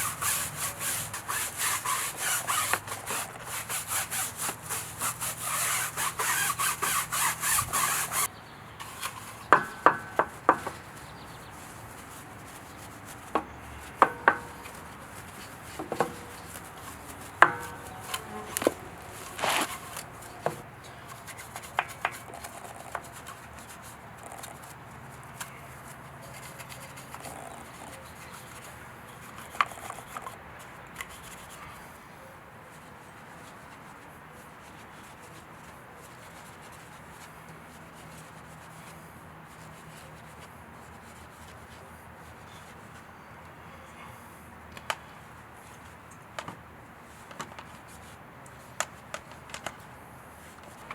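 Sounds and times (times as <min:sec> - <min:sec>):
stiff brush scrubbing: 0:00.0 - 0:31.7.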